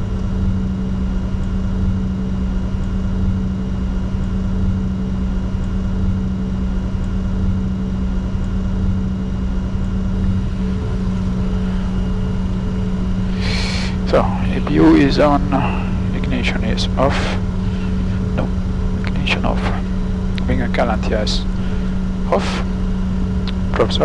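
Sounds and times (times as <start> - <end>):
jet engines idling rumble: 10.2 - 24.0.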